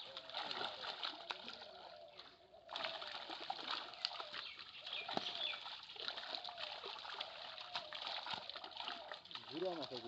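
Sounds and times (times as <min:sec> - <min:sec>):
water splashing in pond: 0:00.0 - 0:10.0
small birds chirping: 0:03.8 - 0:10.0.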